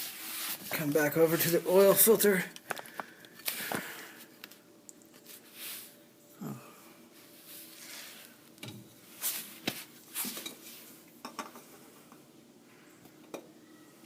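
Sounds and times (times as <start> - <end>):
short rustling scrapes: 0.0 - 1.9, 7.2 - 8.4, 9.0 - 11.0.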